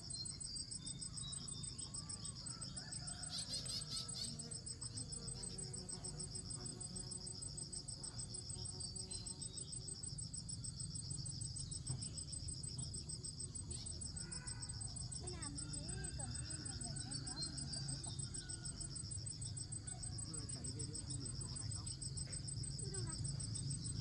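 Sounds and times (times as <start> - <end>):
insects chirring: 0.0 - 24.0.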